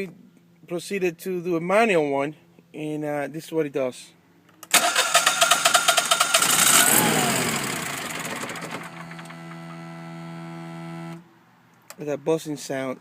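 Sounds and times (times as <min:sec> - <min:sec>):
generator starter cranking: 0:04.6 - 0:11.2
steady buzzing: 0:06.3 - 0:11.2.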